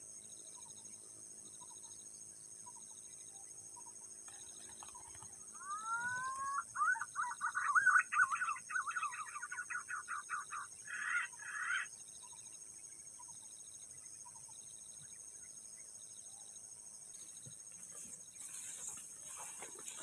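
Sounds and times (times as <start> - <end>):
bird calling: 4.3 - 12.4.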